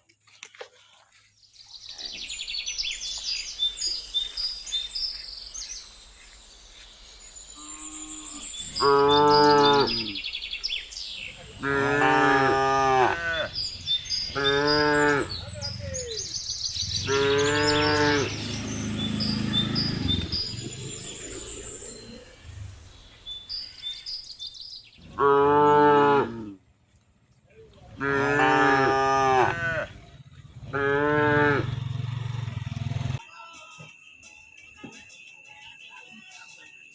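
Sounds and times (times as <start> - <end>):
cattle mooing: 11.6 - 13.6, 14.3 - 15.4, 17.0 - 21.4, 25.1 - 26.6, 27.9 - 33.2.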